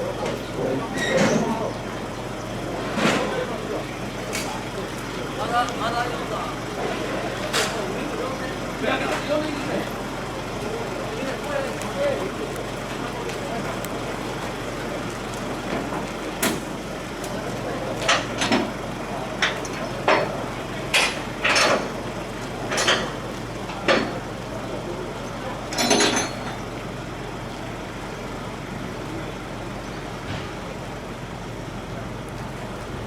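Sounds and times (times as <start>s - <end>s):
heavy gear knocking and clanking: 17.3s - 24.4s, 25.3s - 26.8s.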